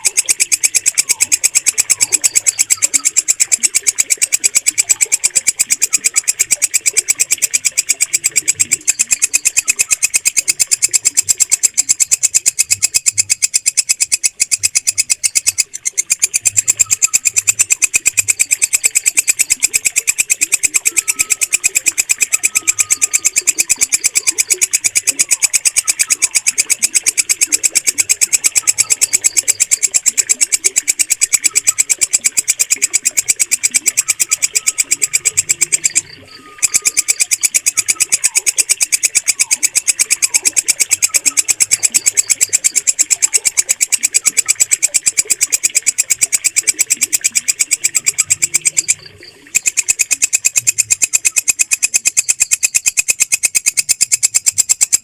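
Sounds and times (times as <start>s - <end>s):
bush cricket stridulating: 0.0s - 54.9s.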